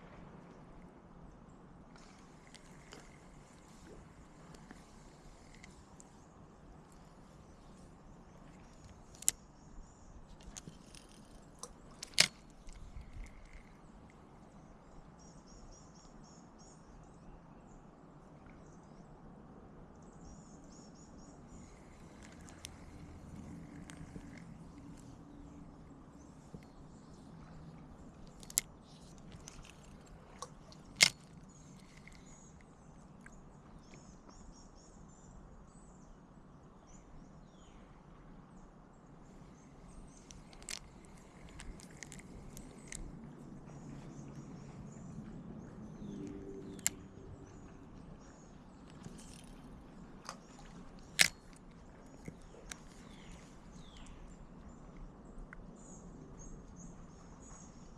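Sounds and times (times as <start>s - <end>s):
low steady hum: 0.0s - 57.9s
faint bird chirping: 1.4s - 19.2s, 19.9s - 57.9s
sharp clicks: 8.4s - 9.5s, 10.3s - 13.8s, 21.5s - 25.6s, 28.1s - 33.3s, 39.8s - 43.1s, 45.9s - 47.7s, 48.8s - 54.2s.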